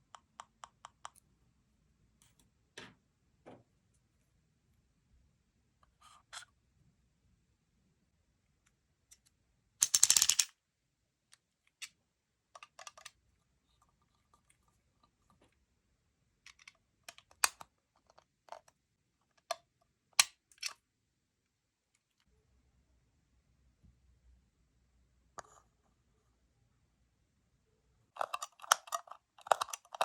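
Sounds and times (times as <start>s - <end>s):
clicks and taps of small parts: 0.0s - 1.2s, 9.1s - 10.5s, 12.6s - 13.2s, 16.5s - 20.8s, 28.2s - 30.0s.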